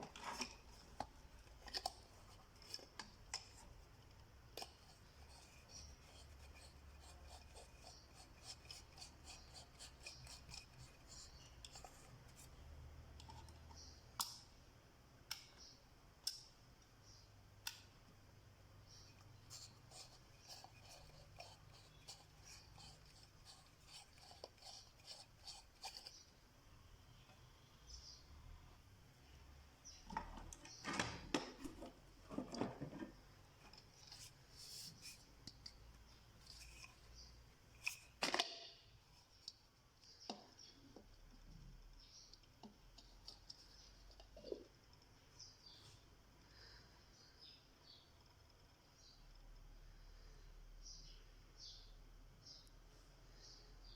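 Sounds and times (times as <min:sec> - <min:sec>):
scratching strokes: 0:04.6 - 0:12.5, 0:19.1 - 0:26.3
small clicks and taps: 0:15.2 - 0:16.9.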